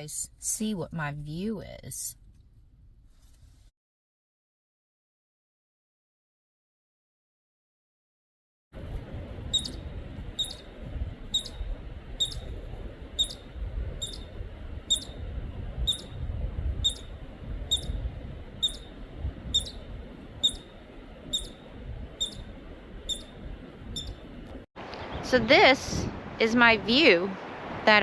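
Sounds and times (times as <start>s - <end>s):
low rumble: 8.8s - 28.0s
short high squeak: 10.4s - 10.6s, 11.4s - 11.6s.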